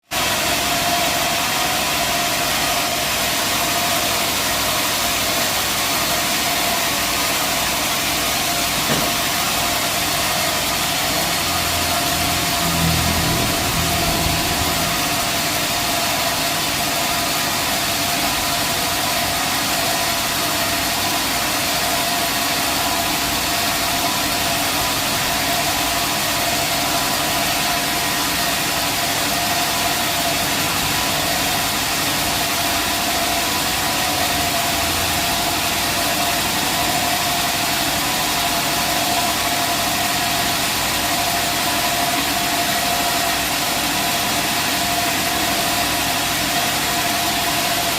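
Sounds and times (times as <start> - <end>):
band saw machine whine: 6.0 - 20.8.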